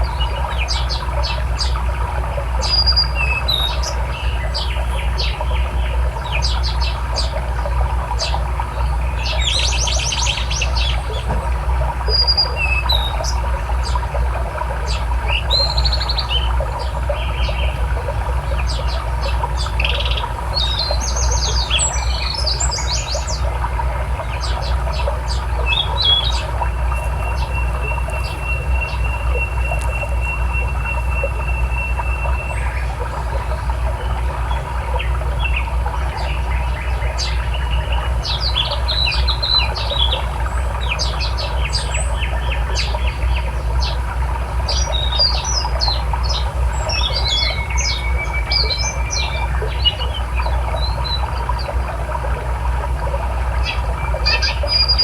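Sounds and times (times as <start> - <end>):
songbirds chirping: 0.0 - 55.0.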